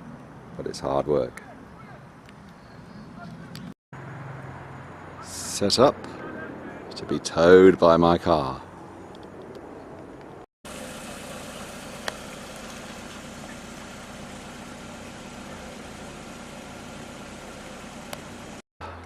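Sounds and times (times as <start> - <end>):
car engine running: 10.7 - 18.6.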